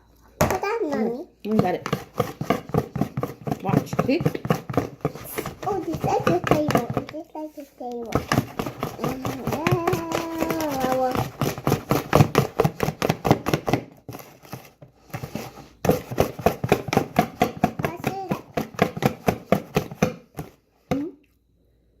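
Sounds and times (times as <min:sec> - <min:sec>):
child's voice: 0:00.4 - 0:01.4, 0:05.3 - 0:11.3, 0:17.8 - 0:18.6.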